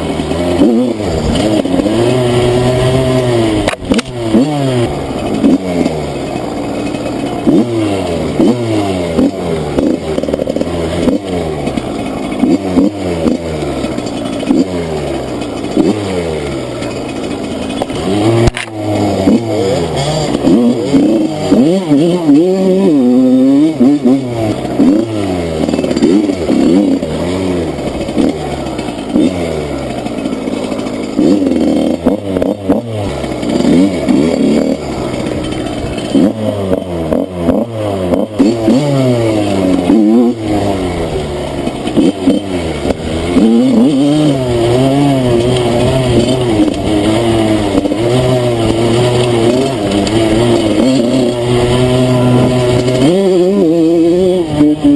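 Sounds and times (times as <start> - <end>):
knocks and clatter: 0.0 - 54.9
motorcycle engine revving: 0.0 - 54.9.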